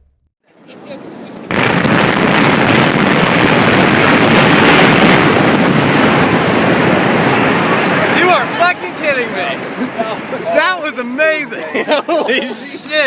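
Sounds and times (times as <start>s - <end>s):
structure collapsing rumble: 1.5s - 9.8s
building implosion roar: 1.5s - 9.9s.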